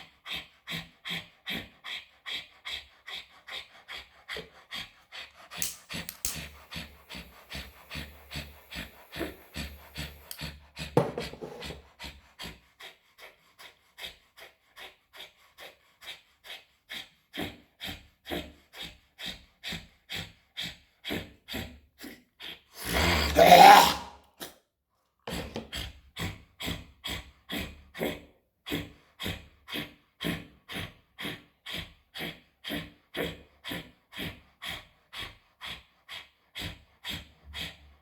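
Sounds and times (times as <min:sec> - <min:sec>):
forceful nasal exhalations: 0:22.8 - 0:24.2.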